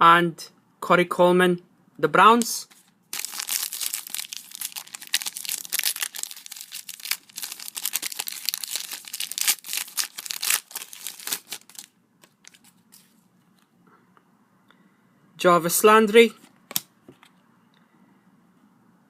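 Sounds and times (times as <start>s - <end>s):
cards being handled: 2.4s - 13.7s
foil wrapper crinkling and tearing: 3.1s - 12.8s.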